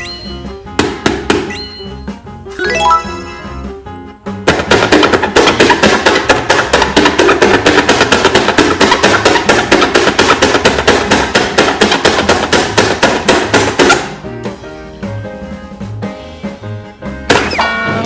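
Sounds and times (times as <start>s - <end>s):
rapid sharp knocks: 0.8s - 1.5s, 4.5s - 14.1s.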